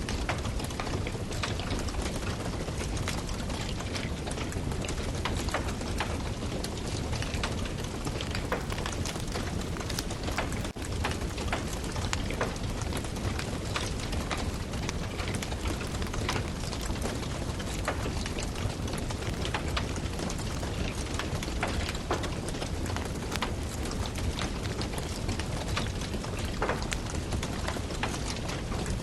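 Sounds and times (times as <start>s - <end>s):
firewood crackling and popping: 0.2s - 29.0s
steady hiss: 8.2s - 27.6s.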